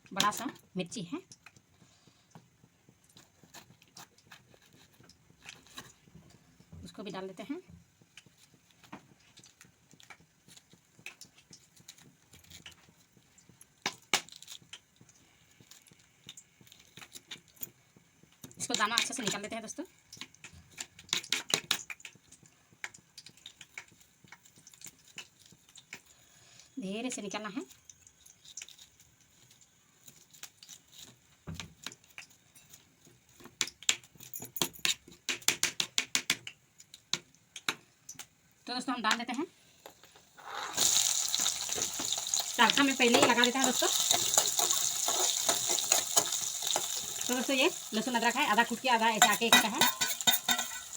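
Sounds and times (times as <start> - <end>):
kitchen clicks and taps: 20.1 - 26.0, 31.5 - 38.3, 41.7 - 47.4, 49.2 - 50.9
utensils clicking and tapping: 40.8 - 50.9.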